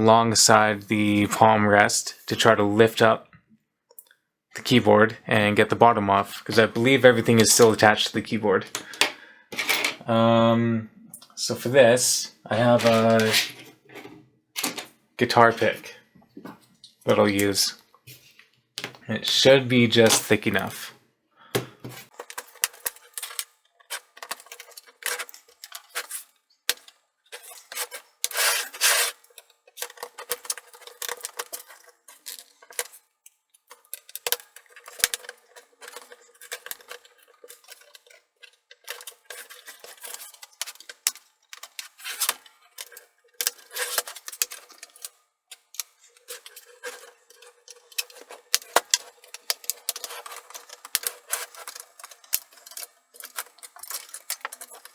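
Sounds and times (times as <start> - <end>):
guitar pick scraping plastic case: 12.6 - 14.1, 27.3 - 32.9, 33.8 - 54.9.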